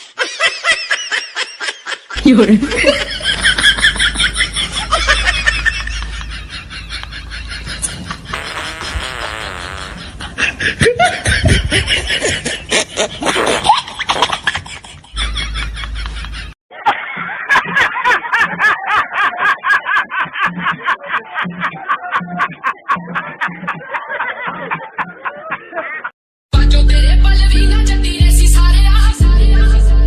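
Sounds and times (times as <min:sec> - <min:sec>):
bursts of laughter: 0:00.0 - 0:26.2
music with a steady beat: 0:26.6 - 0:30.0.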